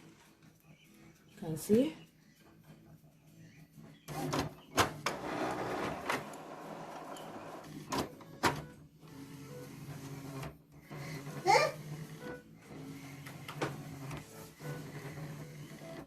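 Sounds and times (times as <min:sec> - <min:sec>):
printer low hum: 0:04.1 - 0:16.0
printer motor whirring: 0:04.1 - 0:16.0.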